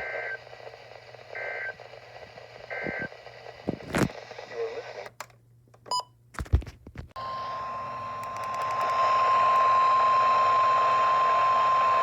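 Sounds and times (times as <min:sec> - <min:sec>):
radio static hiss: 0:00.0 - 0:05.2.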